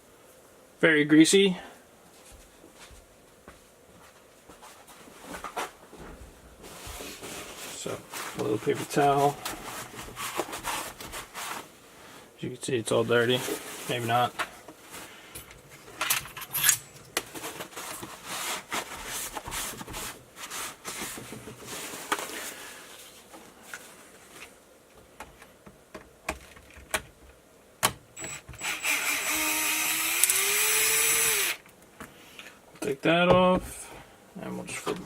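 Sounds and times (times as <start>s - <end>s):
paper towel rubbing: 6.6s - 12.2s, 13.0s - 15.2s, 17.4s - 24.4s
electric drill whine: 28.2s - 31.6s.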